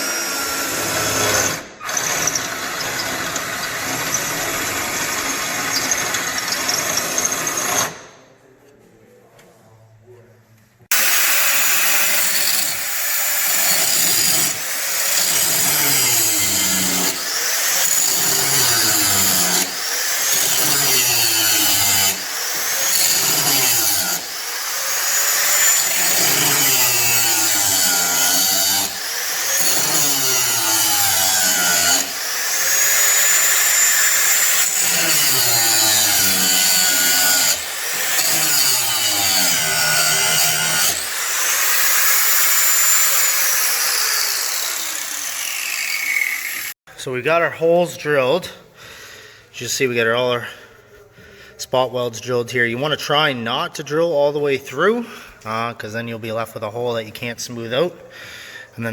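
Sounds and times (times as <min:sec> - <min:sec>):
cordless drill boring into steel: 0:00.0 - 0:08.1, 0:10.9 - 0:46.8.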